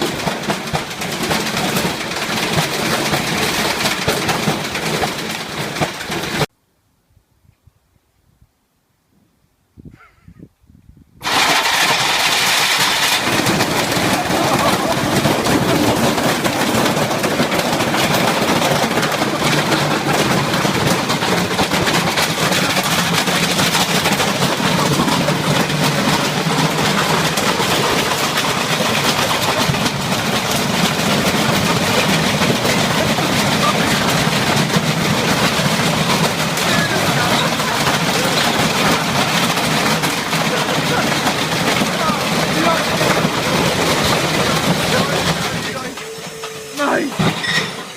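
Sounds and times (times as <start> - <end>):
loud steady machine noise: 0.0 - 6.5, 11.2 - 47.9.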